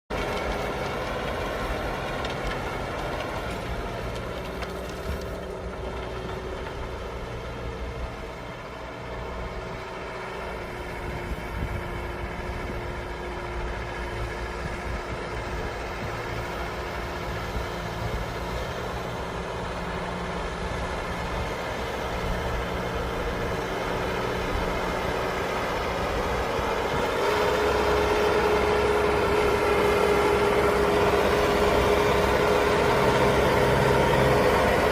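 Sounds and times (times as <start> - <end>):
tractor engine running: 0.1 - 34.9.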